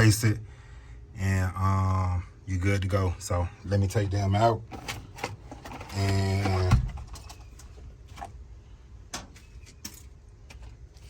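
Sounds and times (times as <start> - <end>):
man speaking: 0.0 - 0.5, 1.2 - 4.7, 5.9 - 6.8.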